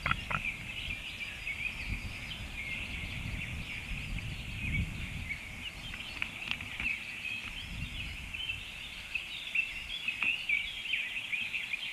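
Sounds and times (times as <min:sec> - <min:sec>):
birds twittering and chirping: 0:00.0 - 0:11.9.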